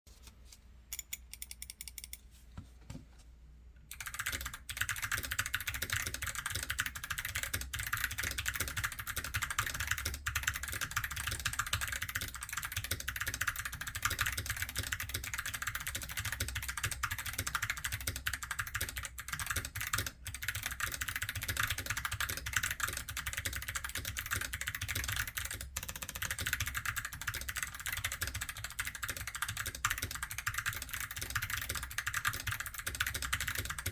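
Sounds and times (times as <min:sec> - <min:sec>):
clicky mechanical keyboard typing: 0:00.9 - 0:02.2, 0:03.9 - 0:33.9.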